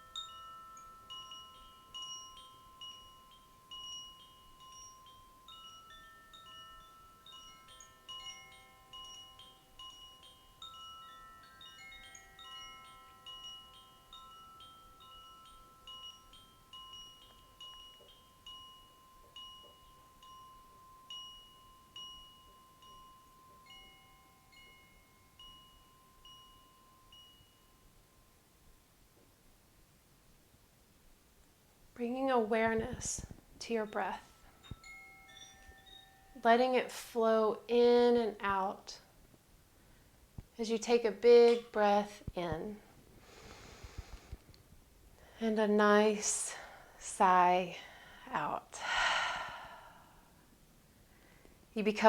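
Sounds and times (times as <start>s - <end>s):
wind chime ringing: 0.0s - 28.5s, 33.2s - 37.4s.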